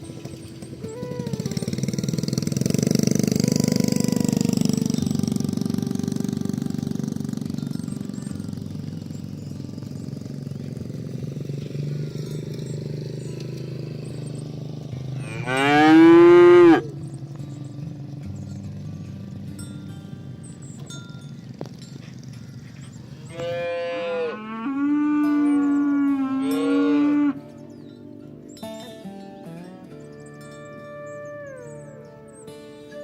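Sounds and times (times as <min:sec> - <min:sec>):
cattle mooing: 0:15.2 - 0:16.9, 0:23.2 - 0:27.6.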